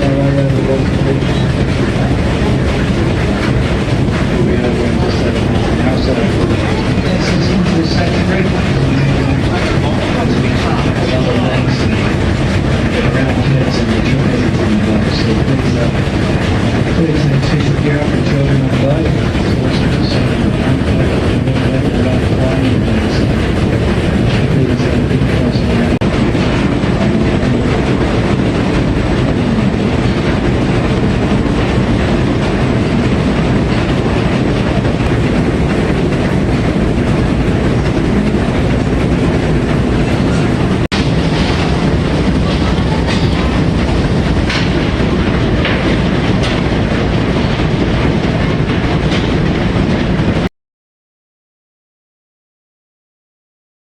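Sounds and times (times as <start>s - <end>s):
loud machinery running: 0.0s - 50.5s.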